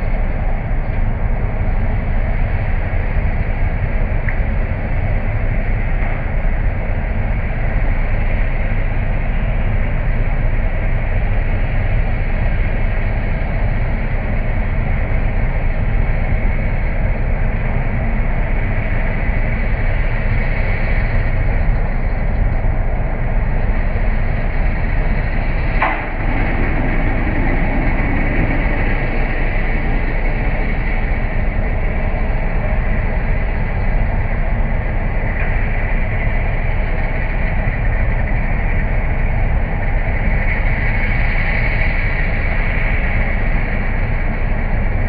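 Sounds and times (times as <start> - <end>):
cold milling machine working: 21.3 - 37.6.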